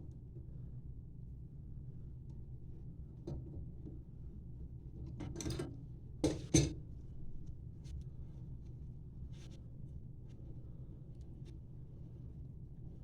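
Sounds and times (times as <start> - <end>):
low steady hum: 3.9 - 13.0.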